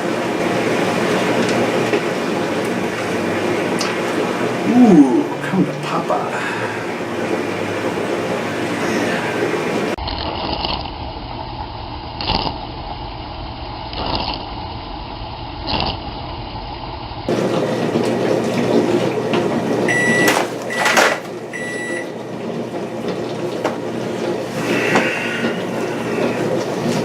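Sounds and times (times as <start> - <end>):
dishwasher water spraying: 0.0 - 10.0, 17.3 - 27.0.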